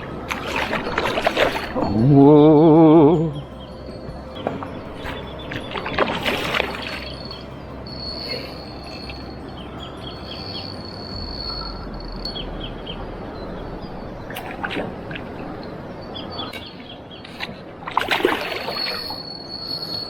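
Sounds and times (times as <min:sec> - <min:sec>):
outdoor background: 0:00.0 - 0:20.0
bird whistles and chirps: 0:06.8 - 0:13.0, 0:18.4 - 0:20.0.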